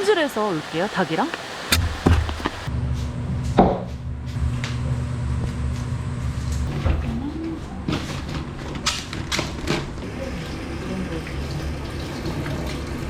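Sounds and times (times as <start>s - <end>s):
low mechanical hum: 0.0s - 9.0s
sharp clicks and knocks: 1.3s - 2.7s.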